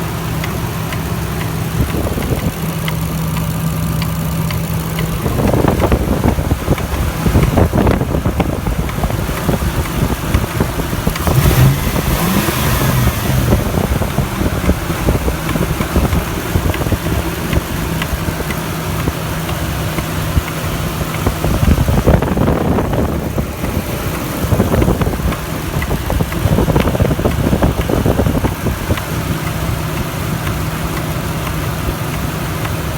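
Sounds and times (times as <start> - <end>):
car engine idling and revving: 0.0 - 32.9
engine knock: 0.0 - 32.9.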